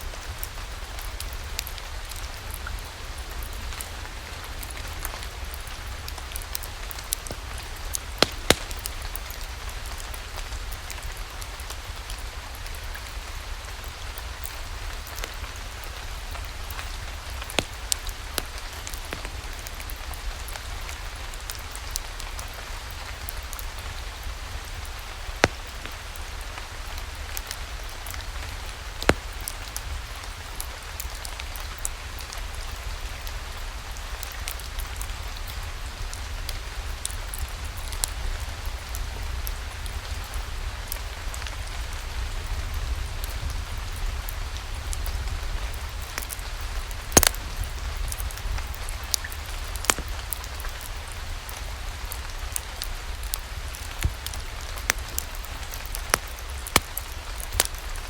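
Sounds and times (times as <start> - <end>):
crackling wood fire: 0.0 - 58.0
steady rain: 0.0 - 58.0
fire pops: 4.7 - 10.2, 16.4 - 19.9, 24.6 - 26.4, 27.3 - 30.0, 46.2 - 51.6, 52.8 - 58.0.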